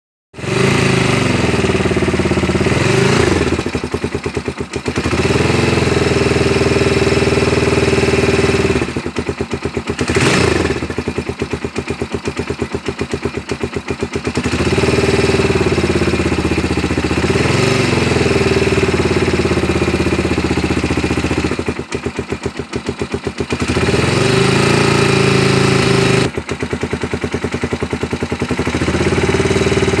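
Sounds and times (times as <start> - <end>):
engine revving and idling: 0.4 - 30.0.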